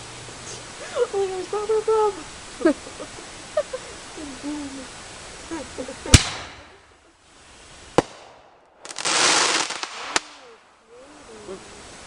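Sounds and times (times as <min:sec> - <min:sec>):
fireworks crackling: 0:00.0 - 0:12.0
firework bangs: 0:06.1 - 0:07.0, 0:07.8 - 0:10.9.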